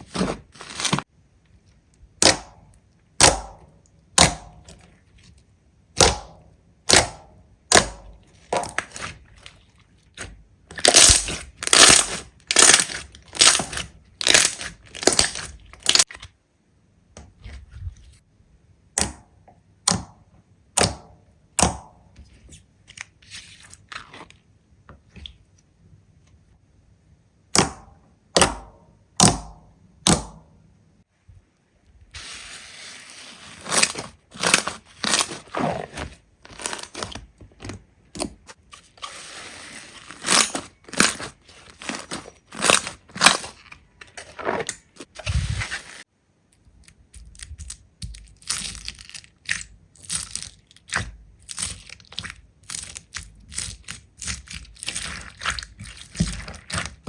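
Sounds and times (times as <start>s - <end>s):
slime popping and crackling: 10.2s - 16.2s, 40.0s - 43.6s, 47.2s - 57.0s.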